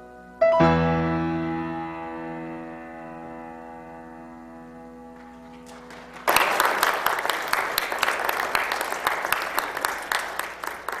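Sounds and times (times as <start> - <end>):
keyboard chord: 0.0 - 5.8
audience applause: 5.2 - 11.0.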